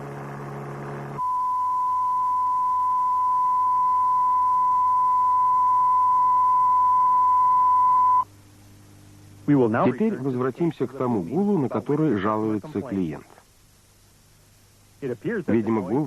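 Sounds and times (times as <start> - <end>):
low buzzing hum: 0.0 - 16.0
high-pitched test tone: 1.2 - 8.2.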